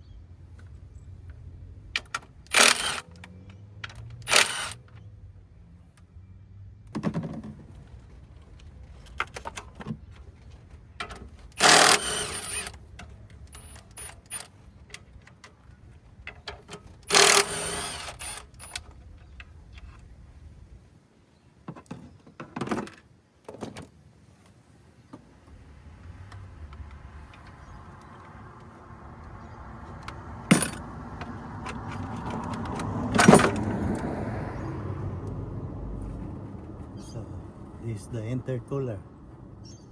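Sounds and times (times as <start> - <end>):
tools and metal parts clinking: 11.0 - 15.6, 16.2 - 19.9, 30.5 - 33.9
metal parts clattering: 11.6 - 12.7, 30.5 - 31.0, 32.0 - 33.7.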